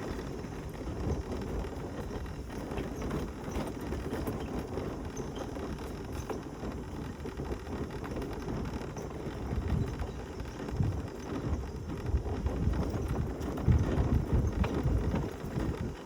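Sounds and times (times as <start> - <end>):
mobility scooter rumbling: 0.0 - 16.0
small rattles and knocks: 0.0 - 16.0.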